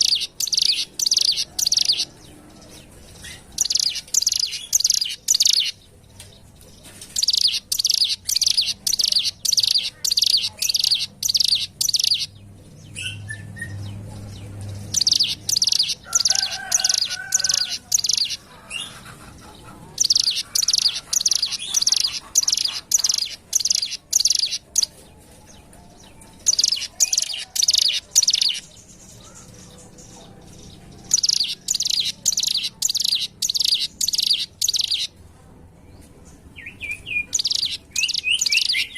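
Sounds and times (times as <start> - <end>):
bird high chirping: 0.0 - 35.2, 36.0 - 38.9.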